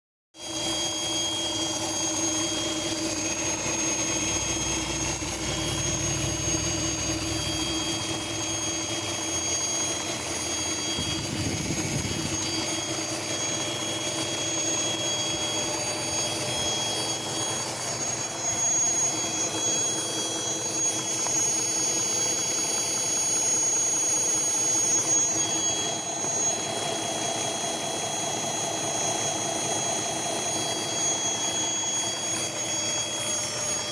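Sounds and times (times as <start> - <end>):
high-pitched whine: 0.4 - 33.9
car engine idling: 3.3 - 12.8.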